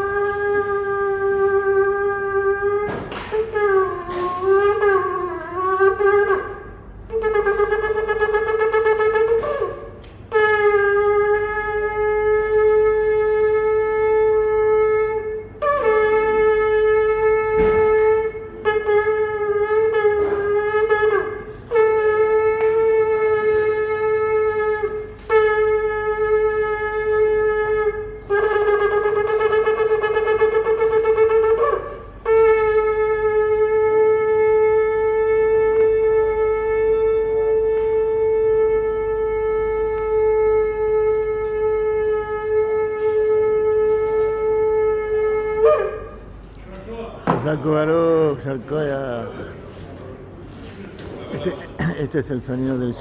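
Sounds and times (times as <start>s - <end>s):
ram's horn blasts: 0.0s - 46.4s.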